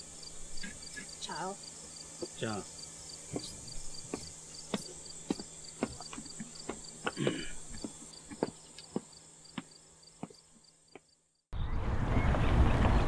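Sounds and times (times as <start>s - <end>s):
pulsing insect chirping: 0.0s - 11.4s
footsteps on hard surface: 3.3s - 7.2s.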